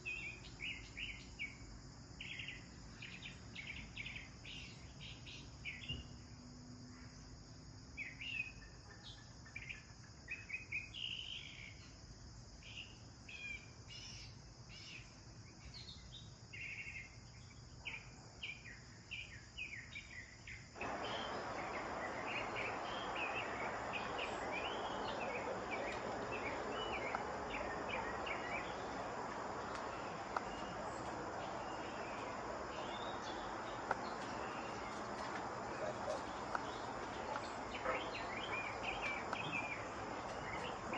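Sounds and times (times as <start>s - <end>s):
sparrows chirping: 18.4s - 40.9s
high insect drone: 20.5s - 40.9s
steady rushing noise: 20.8s - 40.9s.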